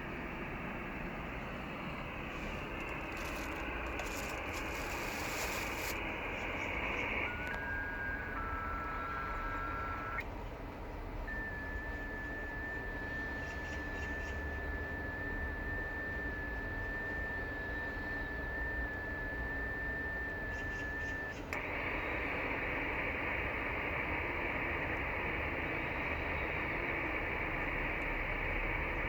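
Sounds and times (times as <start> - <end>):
radio band noise hiss: 0.0 - 29.0
click: 7.3 - 7.7, 20.5 - 21.9.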